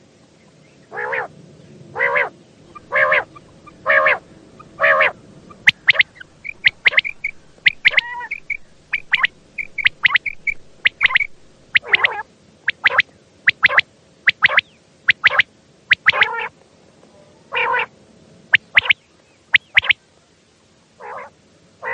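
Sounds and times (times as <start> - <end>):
quail calling: 0.9 - 1.3, 2.0 - 16.5, 17.5 - 17.9, 18.5 - 20.0, 21.0 - 21.9.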